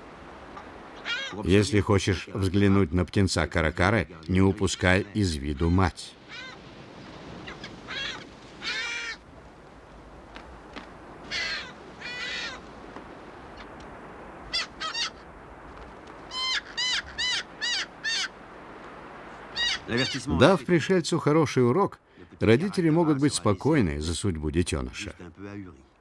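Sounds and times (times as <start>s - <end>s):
bird giving harsh grating calls: 11.3s - 12.6s, 14.5s - 15.2s, 16.3s - 18.4s, 19.4s - 20.4s.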